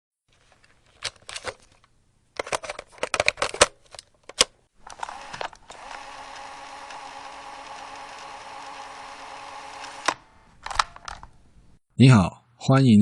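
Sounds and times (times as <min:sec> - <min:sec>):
mechanical whir: 0:04.8 - 0:11.2.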